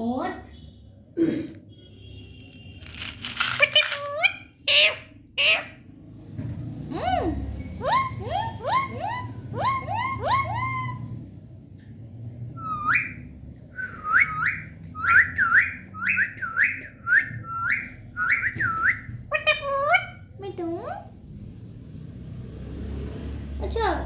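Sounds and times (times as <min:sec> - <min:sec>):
parrot whistled calls: 0:07.8 - 0:11.0, 0:12.6 - 0:20.2.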